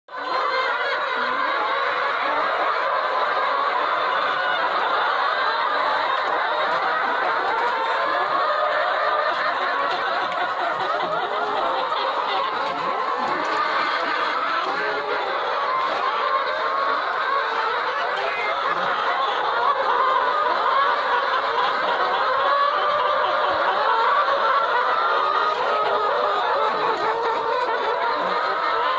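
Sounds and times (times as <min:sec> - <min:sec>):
hens clucking: 0:00.1 - 0:28.9.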